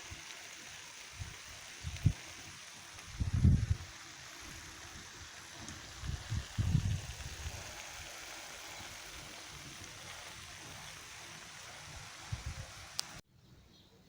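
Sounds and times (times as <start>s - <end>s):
steady hiss: 0.0s - 13.2s
wind buffeting microphone: 3.0s - 4.0s, 4.9s - 8.1s, 11.9s - 12.8s.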